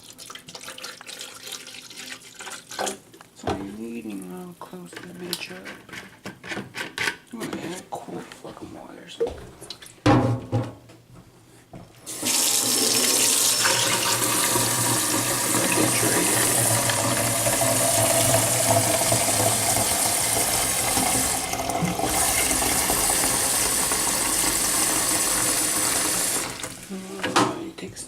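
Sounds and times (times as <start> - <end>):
tap water running into container: 0.0 - 3.1, 12.1 - 27.5.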